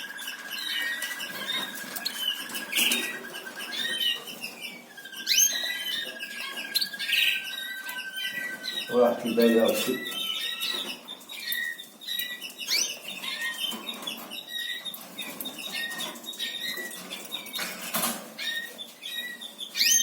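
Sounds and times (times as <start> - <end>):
canaries chirping: 0.0 - 20.0.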